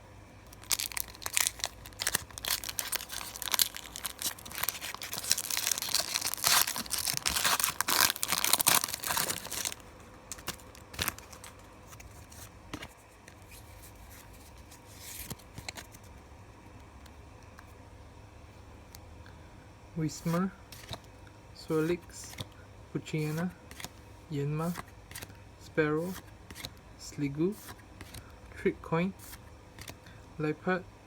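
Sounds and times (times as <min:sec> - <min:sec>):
foil wrapper tearing and crinkling: 0:00.5 - 0:11.6
cards clicking and rustling: 0:00.6 - 0:16.1, 0:20.2 - 0:21.1, 0:21.7 - 0:22.6, 0:23.2 - 0:24.0, 0:24.6 - 0:25.4, 0:26.0 - 0:26.8, 0:27.5 - 0:28.2, 0:29.2 - 0:30.0.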